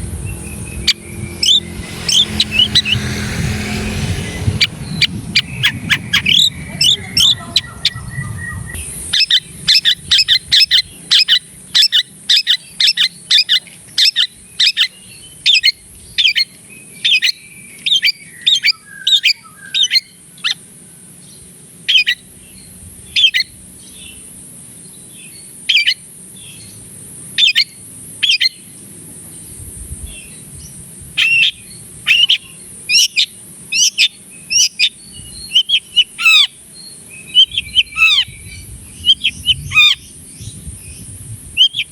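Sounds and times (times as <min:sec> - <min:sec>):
bird singing sharp calls: 0:00.0 - 0:26.8, 0:27.4 - 0:41.9
steady high hiss: 0:08.7 - 0:13.2.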